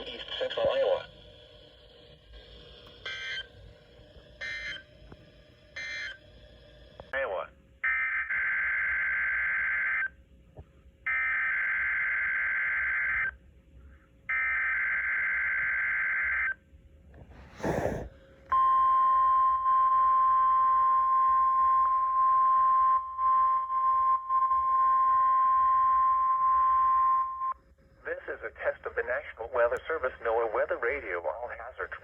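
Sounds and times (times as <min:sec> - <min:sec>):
steady warning alarm tone: 0:02.3 - 0:06.9.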